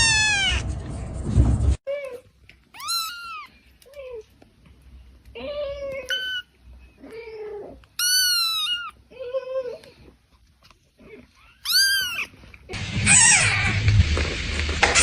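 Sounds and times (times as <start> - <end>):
kittens meowing: 11.5 - 12.4.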